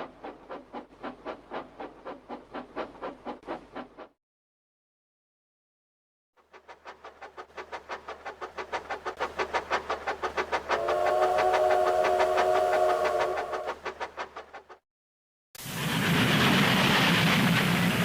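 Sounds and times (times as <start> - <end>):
train chugging: 0.0 - 4.2, 6.4 - 14.8
train whistle: 10.6 - 13.8.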